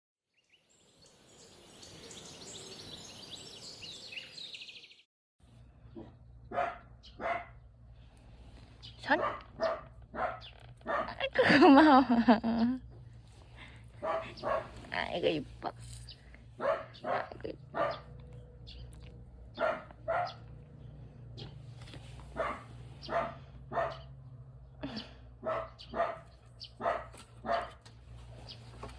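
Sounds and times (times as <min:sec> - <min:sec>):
birds chirping and trilling: 0:00.3 - 0:05.1, 0:13.6 - 0:21.7, 0:22.4 - 0:24.2, 0:25.4 - 0:27.6, 0:28.3 - 0:28.8
high hiss of insects: 0:00.7 - 0:04.8
dog barking: 0:05.9 - 0:07.6, 0:09.1 - 0:11.3, 0:14.0 - 0:14.9, 0:16.6 - 0:18.2, 0:19.5 - 0:20.6, 0:22.3 - 0:24.2, 0:25.4 - 0:27.8.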